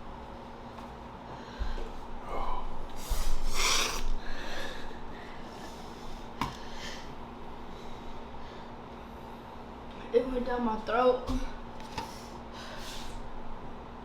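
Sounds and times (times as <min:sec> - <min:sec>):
person rasping breaths and sniffs: 0:02.3 - 0:07.1.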